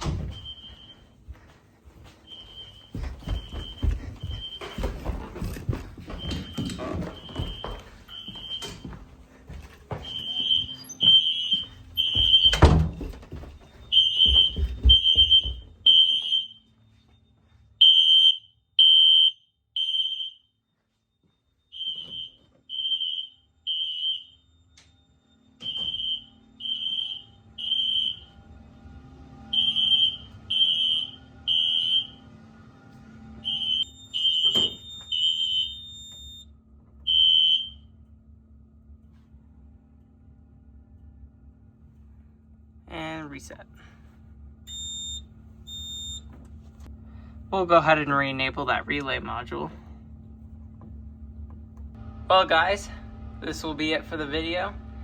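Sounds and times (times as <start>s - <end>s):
footsteps: 0.0s - 17.8s
smoke alarms beeping: 0.0s - 28.6s, 29.4s - 32.3s, 33.2s - 38.0s, 44.6s - 47.3s
faint low hum: 20.7s - 55.0s.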